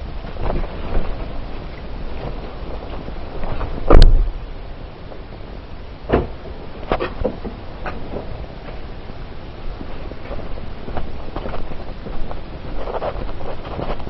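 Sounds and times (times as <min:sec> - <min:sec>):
heavy thump inside car: 0:03.8 - 0:04.3, 0:06.1 - 0:06.4.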